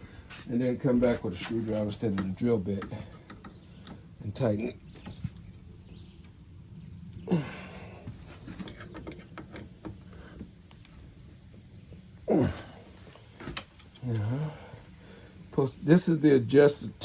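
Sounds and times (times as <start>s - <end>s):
breathy vocal sound falling in pitch: 7.2s - 8.0s.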